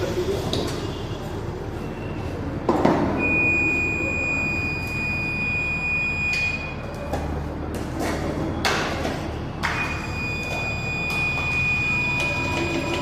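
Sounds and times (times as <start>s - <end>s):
high-pitched electronic beep: 3.2s - 6.8s, 9.8s - 13.0s.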